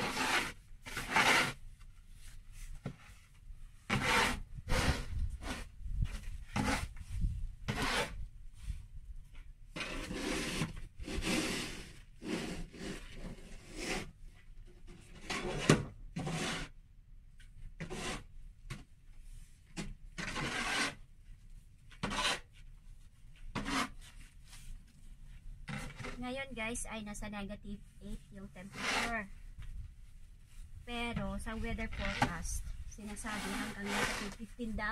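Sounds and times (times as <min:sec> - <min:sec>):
rasping scrapes in snow: 0:00.0 - 0:01.6, 0:03.9 - 0:08.2, 0:09.8 - 0:14.1, 0:15.2 - 0:16.7, 0:17.8 - 0:18.3, 0:20.2 - 0:21.0, 0:22.0 - 0:22.5, 0:23.5 - 0:24.8, 0:28.5 - 0:29.3, 0:31.6 - 0:34.9.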